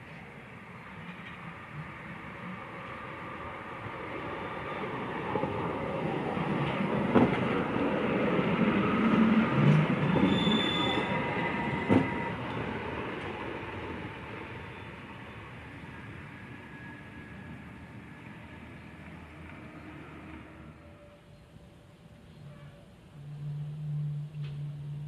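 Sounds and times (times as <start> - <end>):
tram rolling on track: 0.0 - 25.0
tram wheels squealing: 8.2 - 21.5.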